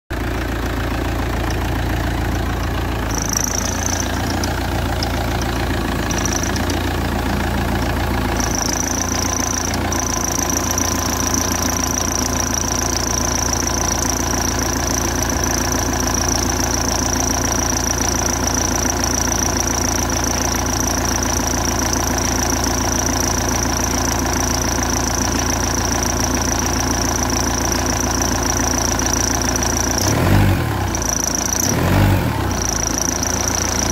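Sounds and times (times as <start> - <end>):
car engine idling: 0.1 - 33.9
high-pitched belt squeal: 3.0 - 7.2, 8.2 - 22.1.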